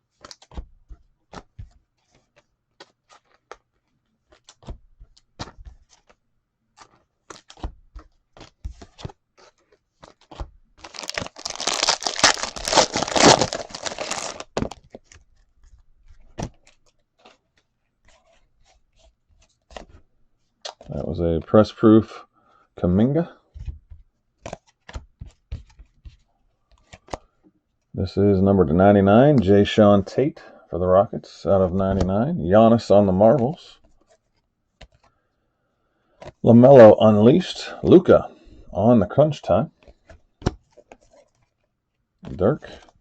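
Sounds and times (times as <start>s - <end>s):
cards clicking and tapping: 0.1s - 6.2s, 6.8s - 20.0s, 23.5s - 27.3s, 33.8s - 35.1s
wrapper tearing and crinkling: 10.0s - 15.2s.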